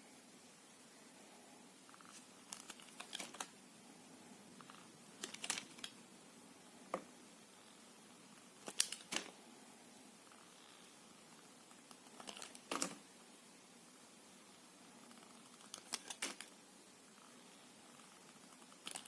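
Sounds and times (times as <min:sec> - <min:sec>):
crisp crackling and clicking: 0:01.9 - 0:03.5, 0:04.6 - 0:06.0, 0:08.6 - 0:09.3, 0:11.7 - 0:13.0, 0:15.2 - 0:16.5, 0:18.3 - 0:19.0.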